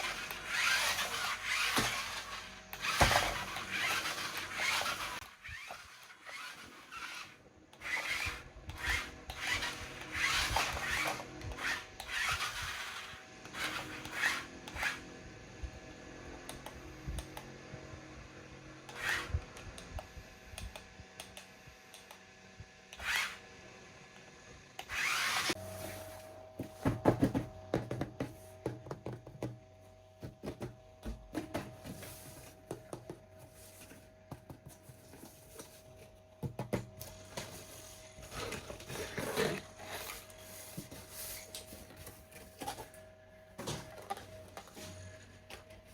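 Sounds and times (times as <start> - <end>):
electric toy motor whirring: 0.0 - 15.1, 18.9 - 20.8, 22.9 - 23.4, 24.8 - 26.0.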